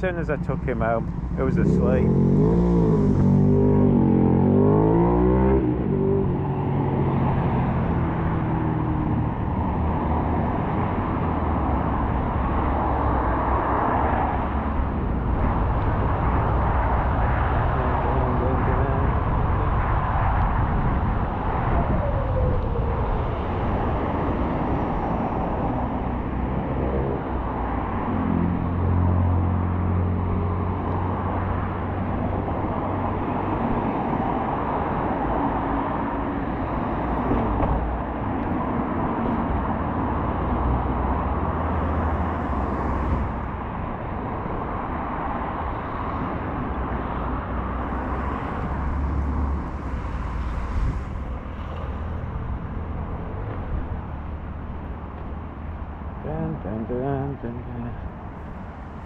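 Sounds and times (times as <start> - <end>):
heavy engine drone: 0.0 - 4.6
passing vehicles: 0.0 - 59.0.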